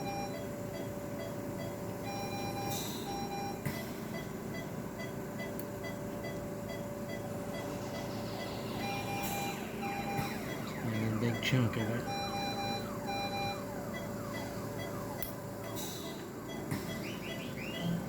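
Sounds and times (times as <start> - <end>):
medical equipment beeping: 0.0 - 18.0
steady hum: 0.0 - 18.0.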